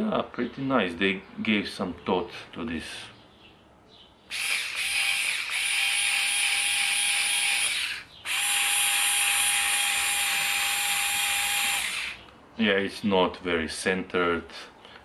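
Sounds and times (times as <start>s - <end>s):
cordless screwdriver motor whine: 4.3s - 12.3s.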